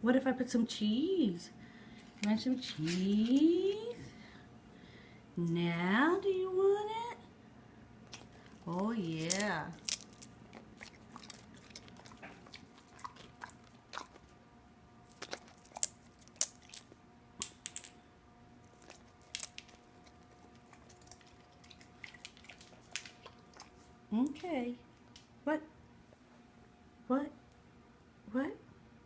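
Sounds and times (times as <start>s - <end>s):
dog chewing food: 8.0s - 14.4s, 15.0s - 17.0s, 18.6s - 24.0s.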